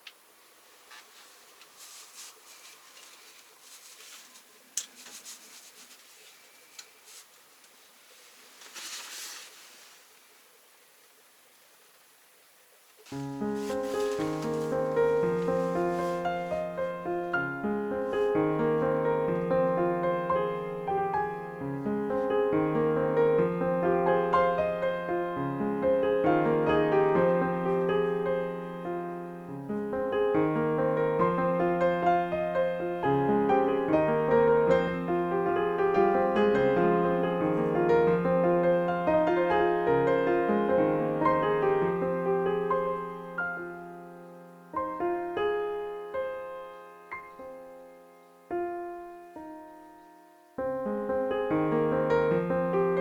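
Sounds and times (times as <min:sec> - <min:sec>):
gentle piano music: 0:13.1 - 0:53.0.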